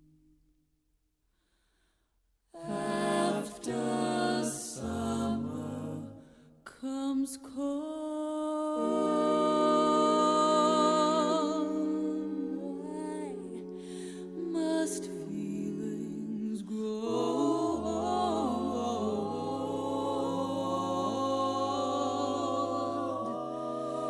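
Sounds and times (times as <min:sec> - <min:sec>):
wavering vocal-like chords: 0:02.6 - 0:06.3, 0:08.5 - 0:24.0.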